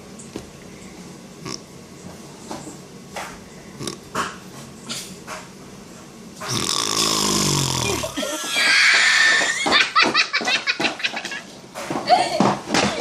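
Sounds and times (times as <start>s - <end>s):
man snoring: 6.4s - 8.2s
people laughing: 8.1s - 11.4s.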